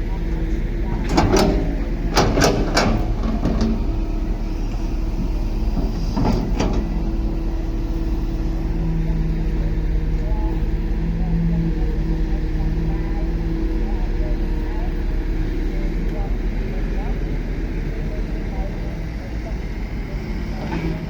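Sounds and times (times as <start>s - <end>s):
bulldozer diesel engine running: 0.0s - 21.0s
metallic clanks and squeaks: 0.9s - 4.0s.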